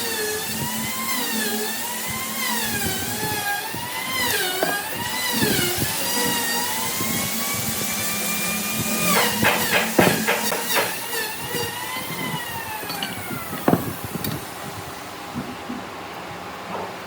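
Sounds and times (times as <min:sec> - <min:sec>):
power tool motor whining: 0:00.0 - 0:15.0
sharp knocks and rattles: 0:09.1 - 0:11.2.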